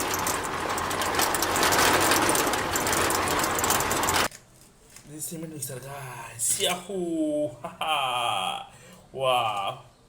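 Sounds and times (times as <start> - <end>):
toy truck mechanical whirr: 0.0 - 4.3.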